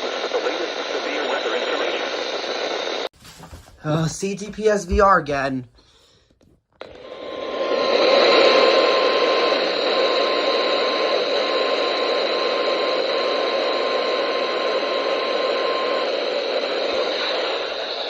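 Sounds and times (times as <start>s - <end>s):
radio static hiss: 0.0s - 3.1s, 6.8s - 18.0s.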